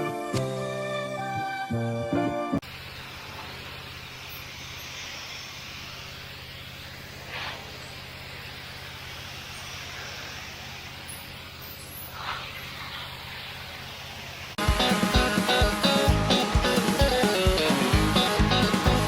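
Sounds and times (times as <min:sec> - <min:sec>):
background music: 0:00.0 - 0:02.6, 0:14.6 - 0:19.0
water spray hissing: 0:02.6 - 0:19.0
pressure washer motor hum: 0:13.7 - 0:19.0.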